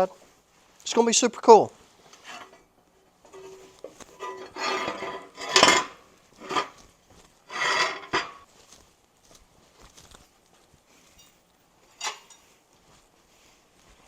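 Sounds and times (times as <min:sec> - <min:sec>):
metal tools clanking and scraping: 0:02.1 - 0:06.8, 0:07.5 - 0:08.5, 0:11.0 - 0:12.6.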